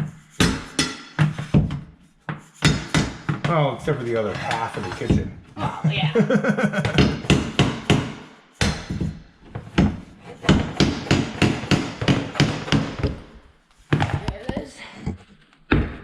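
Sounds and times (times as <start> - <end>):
hammer striking wood: 0.4 - 1.8, 2.6 - 3.4, 6.8 - 14.1.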